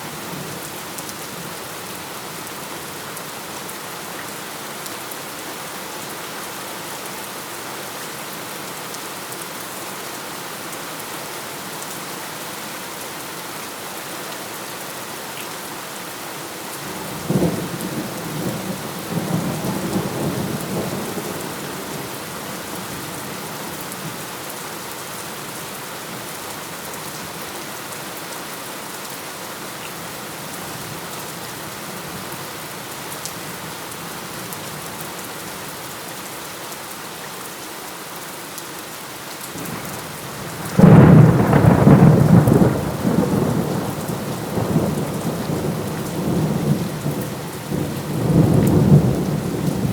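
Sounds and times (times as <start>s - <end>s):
steady rain falling: 0.0s - 49.9s
thunderclap rumbling: 40.7s - 49.9s.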